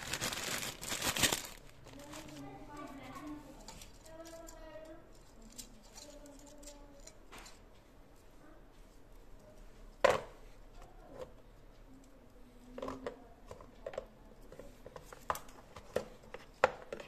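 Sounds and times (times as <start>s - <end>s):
clicks and knocks of tools: 3.7s - 7.8s.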